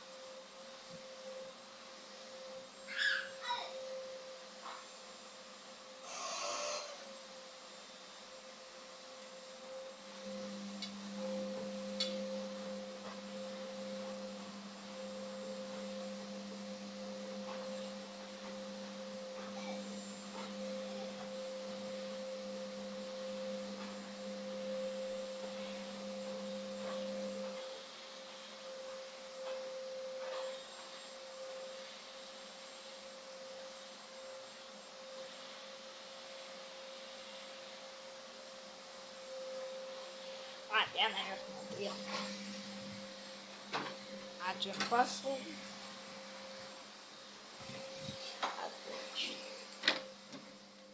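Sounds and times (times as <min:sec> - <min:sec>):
washing machine drum whine: 0:05.4 - 0:37.1, 0:37.7 - 0:50.9
washing machine motor hum: 0:05.7 - 0:32.1, 0:39.5 - 0:50.9.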